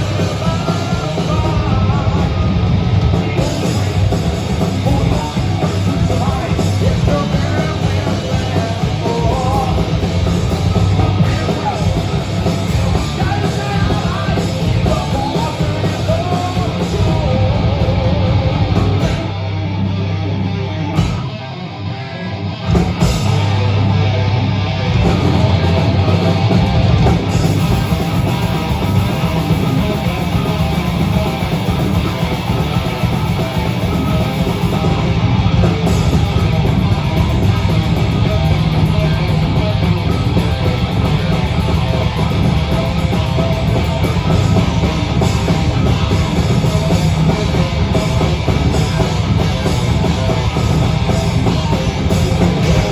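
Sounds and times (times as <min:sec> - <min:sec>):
live rock band playing: 0:00.0 - 0:52.9.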